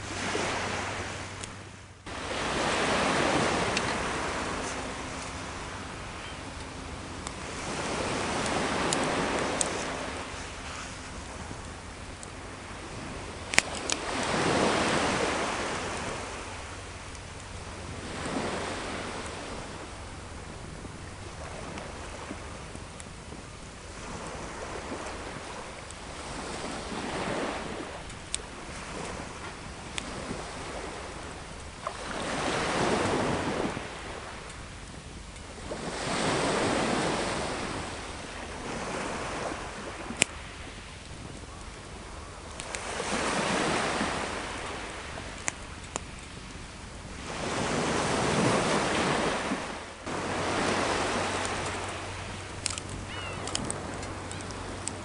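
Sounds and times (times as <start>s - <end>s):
sea waves washing onto shore: 0.0s - 55.0s
campfire pops and crackles: 13.5s - 14.4s.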